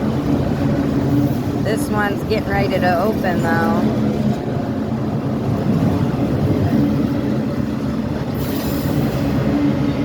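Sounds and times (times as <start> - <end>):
train rumbling past: 0.0 - 10.0.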